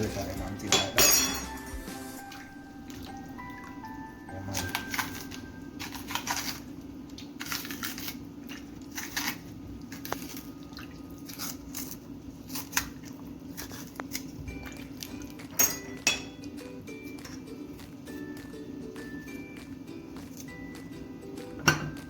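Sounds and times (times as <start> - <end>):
knife scraping banana skin: 4.8 - 6.7, 7.4 - 10.5, 11.2 - 14.4.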